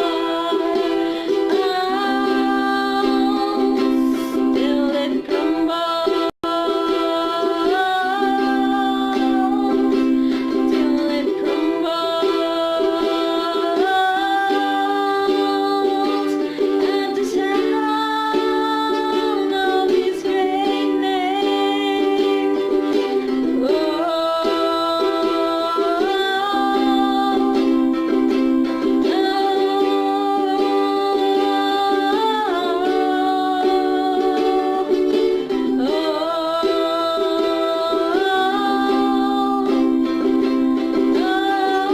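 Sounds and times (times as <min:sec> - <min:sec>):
sliding melody line: 0:00.0 - 0:41.9.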